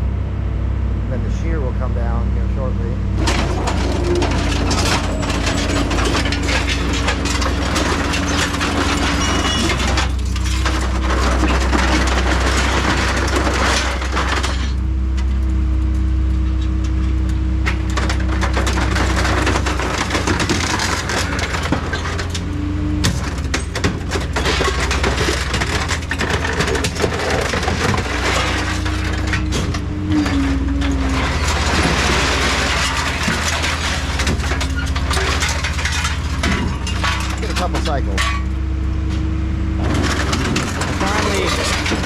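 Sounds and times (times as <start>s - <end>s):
hydraulic machine hum and whine: 0.0s - 42.0s
scrap metal crunching and snapping: 3.2s - 42.0s.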